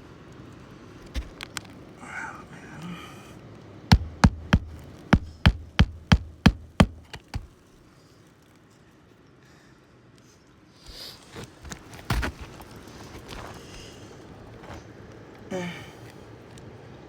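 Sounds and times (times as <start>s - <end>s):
hammer driving nails: 3.9s - 7.5s.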